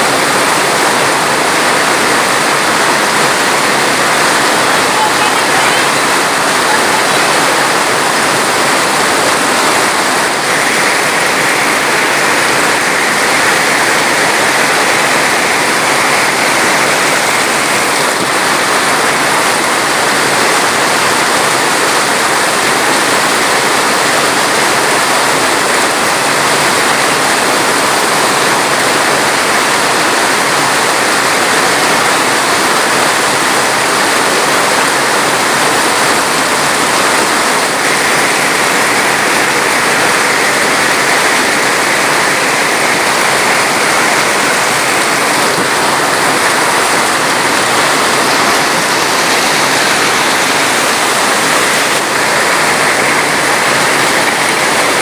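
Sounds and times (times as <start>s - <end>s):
water rushing: 0.0s - 55.0s.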